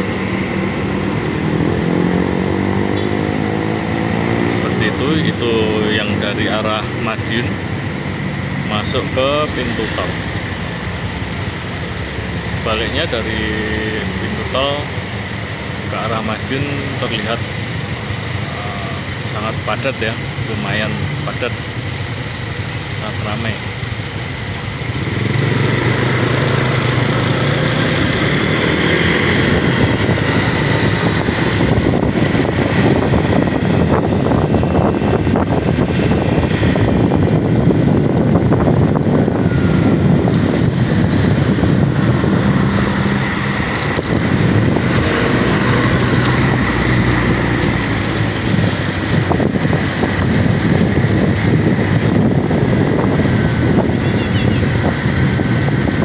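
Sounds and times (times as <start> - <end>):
road traffic: 0.0 - 56.0
wind on microphone: 25.0 - 56.0.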